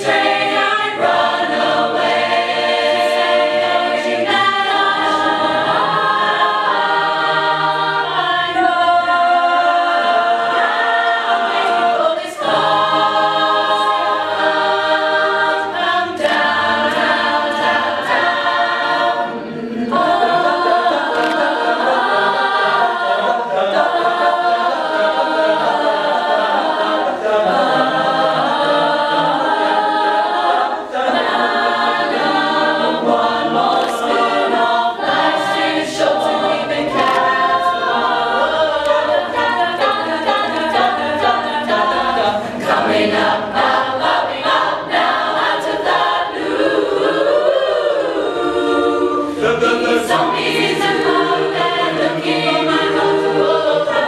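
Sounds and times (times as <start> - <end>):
a cappella group singing: 0.0 - 54.0.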